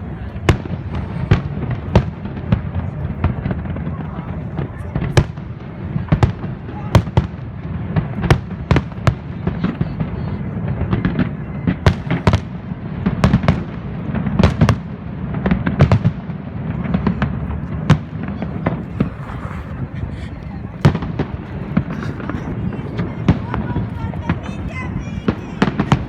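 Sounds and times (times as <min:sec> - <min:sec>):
fireworks bangs and crackles: 0:00.0 - 0:26.0.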